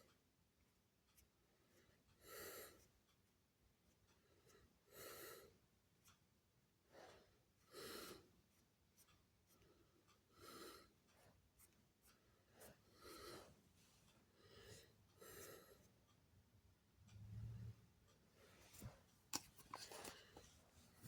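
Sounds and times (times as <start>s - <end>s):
faint breathing: 12.4s - 16.0s.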